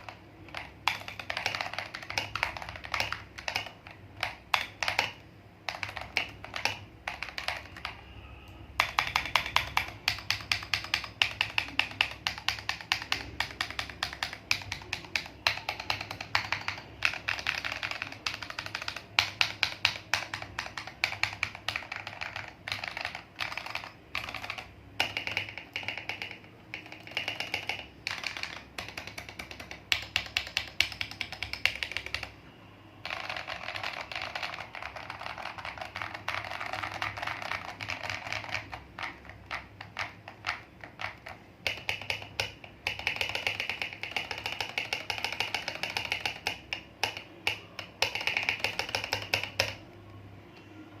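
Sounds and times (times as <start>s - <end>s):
mechanical keyboard typing: 0.0s - 50.2s.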